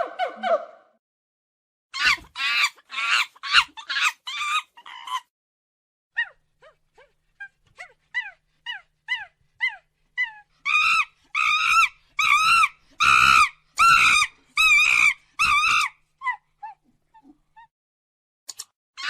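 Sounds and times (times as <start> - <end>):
monkey chirps and calls: 2.0 - 5.2, 7.4 - 17.7.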